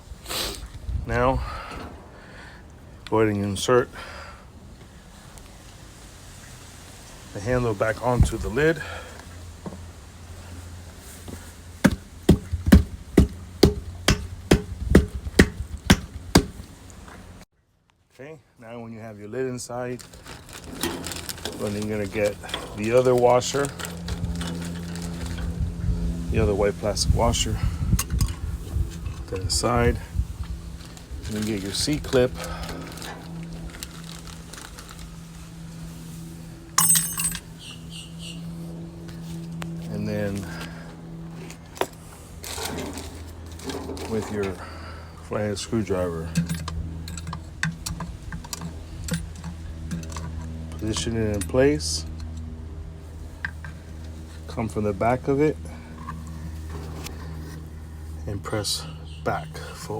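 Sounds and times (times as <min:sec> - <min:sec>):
low hum: 0:08.0 - 0:17.5, 0:20.0 - 0:59.8
sharp metal knocks with ring: 0:11.9 - 0:16.6, 0:36.8 - 0:37.4
metal part clinking: 0:36.8 - 0:37.5, 0:46.3 - 0:51.5.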